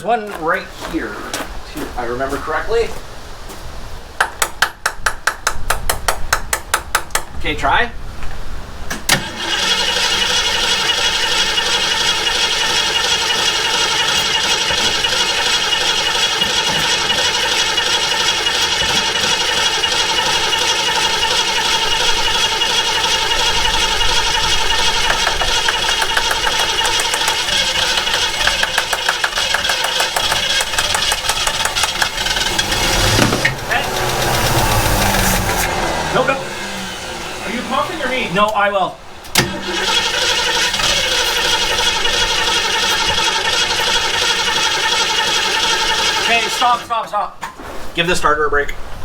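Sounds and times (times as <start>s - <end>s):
car engine cranking by starter motor: 8.7s - 47.4s.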